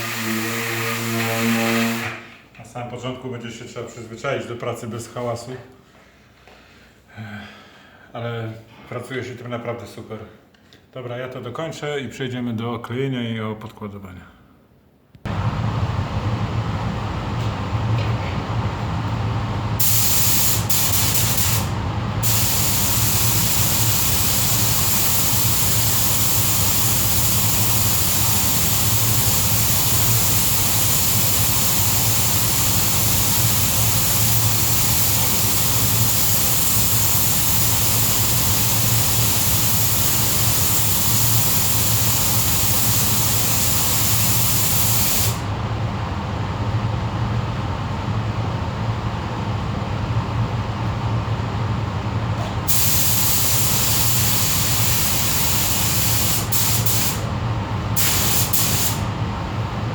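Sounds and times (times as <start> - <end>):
sander abrasive hiss on metal: 0.0 - 2.2, 19.8 - 45.4, 52.7 - 57.2
low motor hum: 15.3 - 19.8.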